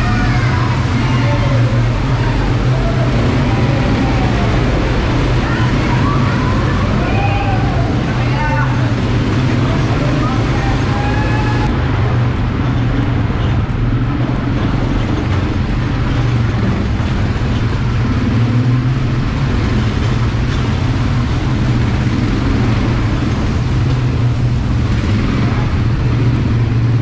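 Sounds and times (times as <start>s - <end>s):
atv engine running: 0.0s - 27.0s
rumbling noise: 0.0s - 27.0s.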